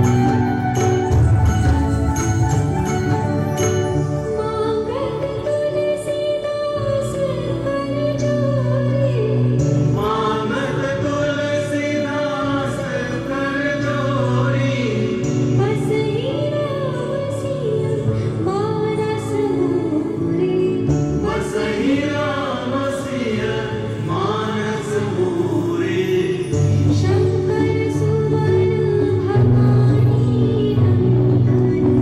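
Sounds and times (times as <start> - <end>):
instrumental accompaniment: 0.0 - 32.0
group of voices singing: 9.9 - 15.4, 21.0 - 28.0.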